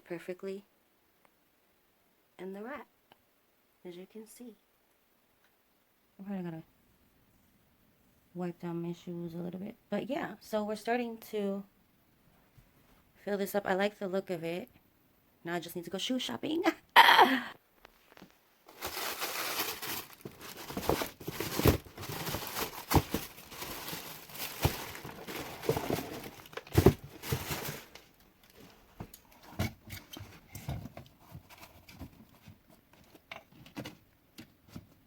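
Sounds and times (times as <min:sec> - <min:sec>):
shoes rustling and crinkling: 0:17.8 - 0:29.5.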